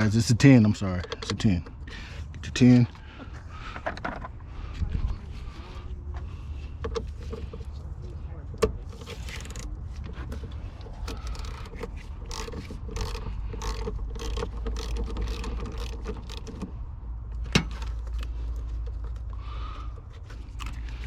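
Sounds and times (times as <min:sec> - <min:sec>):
ratchet wrench clicking: 0:11.0 - 0:16.8.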